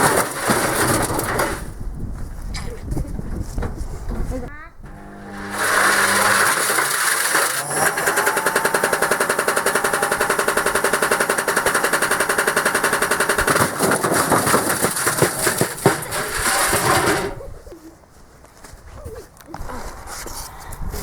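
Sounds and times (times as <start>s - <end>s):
washing machine motor whine: 4.8s - 13.6s
washing machine drum banging: 4.9s - 17.4s.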